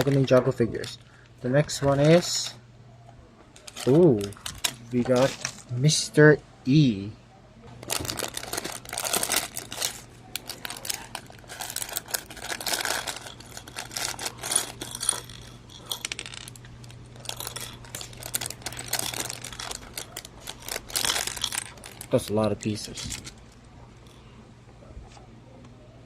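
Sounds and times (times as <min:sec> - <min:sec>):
foil bag crinkling: 0:03.6 - 0:05.6, 0:07.8 - 0:23.5
plastic pieces clattering: 0:03.6 - 0:05.7, 0:07.8 - 0:23.4.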